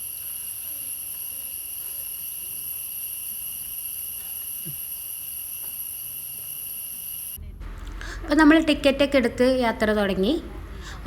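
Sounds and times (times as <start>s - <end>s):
forest insects shrilling: 0.0s - 7.4s.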